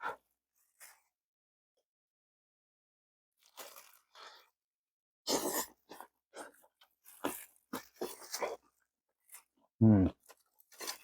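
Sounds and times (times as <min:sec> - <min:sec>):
crunching and chewing food: 0:03.4 - 0:04.6, 0:05.3 - 0:11.0.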